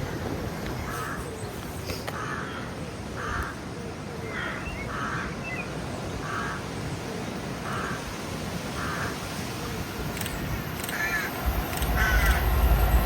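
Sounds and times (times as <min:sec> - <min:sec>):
crow cawing: 0:02.1 - 0:03.6, 0:04.3 - 0:05.4, 0:06.2 - 0:06.7, 0:07.6 - 0:08.1, 0:08.7 - 0:09.3, 0:10.9 - 0:12.5.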